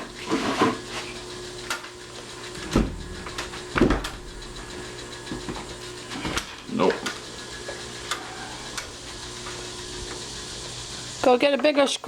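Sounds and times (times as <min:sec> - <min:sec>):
knocks on wooden door: 0:02.7 - 0:03.0, 0:03.7 - 0:04.2
thuds: 0:02.7 - 0:04.3.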